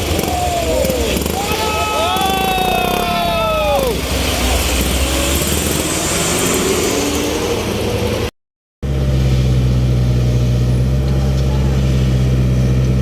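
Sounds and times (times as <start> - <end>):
truck engine humming: 0.0 - 13.0.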